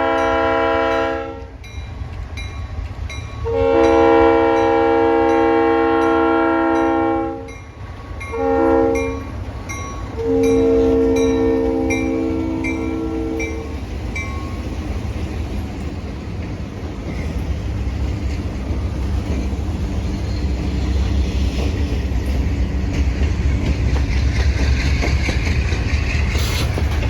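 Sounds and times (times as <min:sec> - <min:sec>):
locomotive air horn blasts: 0:00.0 - 0:01.5, 0:03.4 - 0:07.5, 0:08.3 - 0:09.3, 0:10.2 - 0:13.7
locomotive engine rumble: 0:07.5 - 0:27.0.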